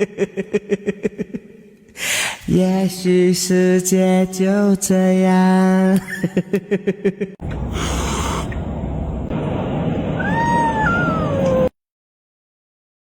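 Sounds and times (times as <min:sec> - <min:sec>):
rapid short pulses: 0:07.6 - 0:08.6
cat meowing: 0:10.2 - 0:11.7.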